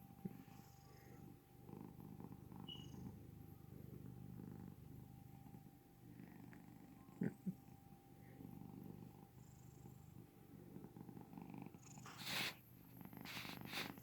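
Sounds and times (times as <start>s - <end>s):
soft low snoring: 0.2s - 14.0s.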